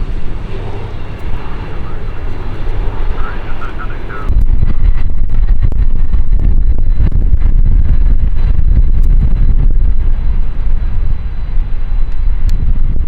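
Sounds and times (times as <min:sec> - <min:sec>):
jet engines roaring: 0:00.0 - 0:04.5.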